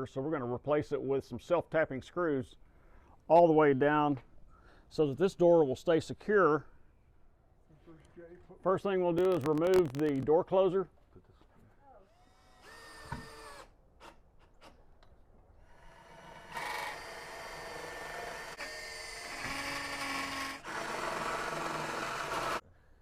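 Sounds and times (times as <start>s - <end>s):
power drill whirring: 12.0s - 14.2s, 15.6s - 22.6s.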